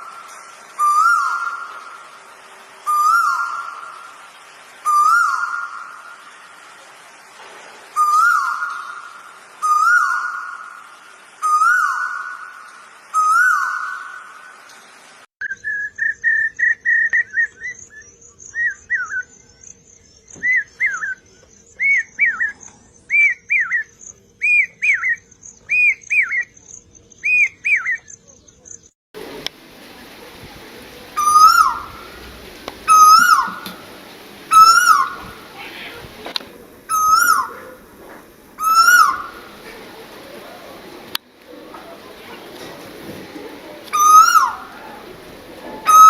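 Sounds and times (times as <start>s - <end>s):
rising and falling whistled bird calls: 0.0s - 6.7s, 7.9s - 28.3s, 31.2s - 32.2s, 32.8s - 33.8s, 34.5s - 35.6s, 36.9s - 37.8s, 38.6s - 39.6s, 43.9s - 45.1s, 45.8s - 46.0s
bird song of paired whistles: 4.9s - 5.8s, 8.0s - 9.0s, 11.4s - 12.4s, 13.2s - 14.0s, 15.4s - 19.6s, 20.2s - 26.6s, 27.2s - 28.2s, 32.9s - 33.6s, 34.5s - 35.3s, 36.9s - 37.6s, 38.6s - 39.4s, 43.9s - 44.7s.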